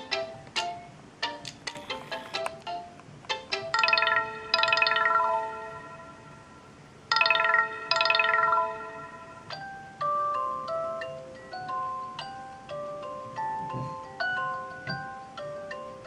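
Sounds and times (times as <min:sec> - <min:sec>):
plucked tone: 0:03.7 - 0:09.6
bright chime ringtone: 0:03.8 - 0:13.2.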